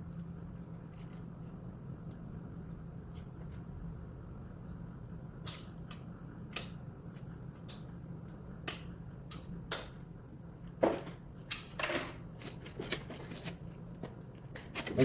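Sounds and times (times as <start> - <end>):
steady low hum: 0.0 - 15.0
tools clicking and tapping: 5.4 - 7.9, 8.6 - 10.1.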